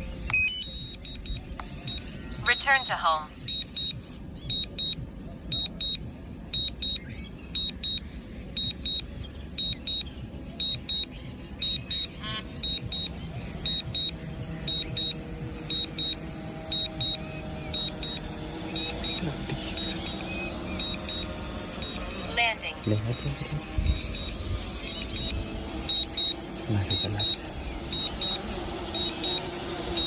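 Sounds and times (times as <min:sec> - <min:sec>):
steady low hum: 0:00.0 - 0:30.0
short buzz: 0:08.6 - 0:30.0.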